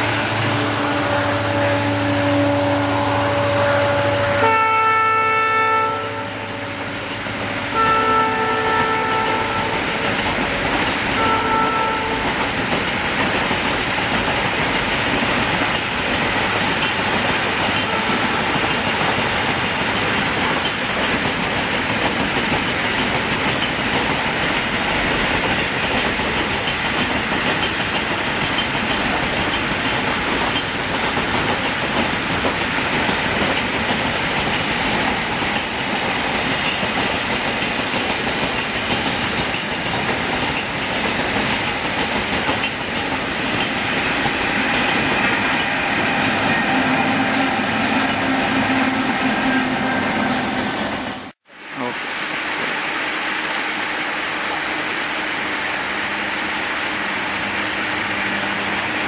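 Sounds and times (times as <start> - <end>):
train horn: 0.0 - 10.2, 11.1 - 12.4, 17.8 - 18.6, 45.6 - 51.3
train rumbling past: 0.0 - 59.0
wheels clattering on rails: 8.7 - 49.2.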